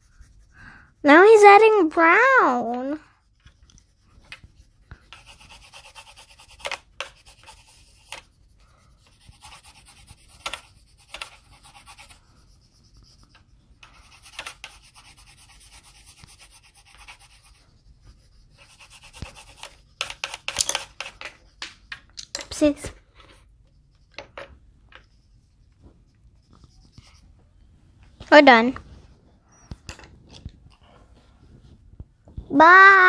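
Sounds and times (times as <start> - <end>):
colouring tool scratching paper: 0.0 - 1.1, 3.2 - 21.6.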